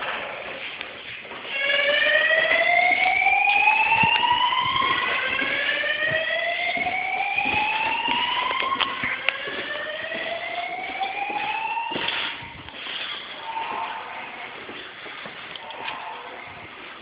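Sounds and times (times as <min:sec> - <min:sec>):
fire alarm whoop tone: 0:01.4 - 0:12.7.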